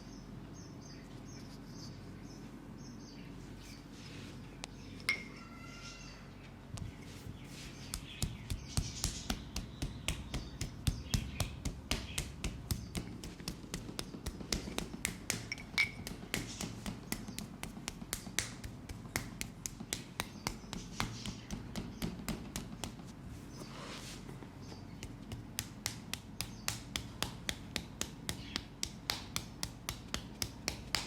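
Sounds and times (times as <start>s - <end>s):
rapid sharp taps: 7.8s - 23.1s, 24.9s - 31.0s.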